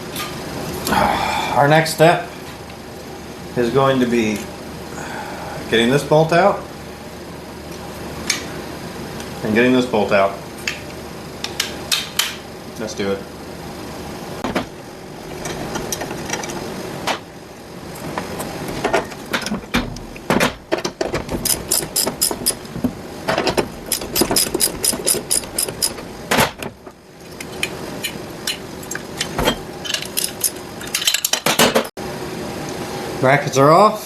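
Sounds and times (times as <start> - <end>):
hand ratchet clicking: 21.4 - 22.6, 23.9 - 26.0
metal tools knocking and clinking: 23.3 - 26.0, 29.4 - 31.9.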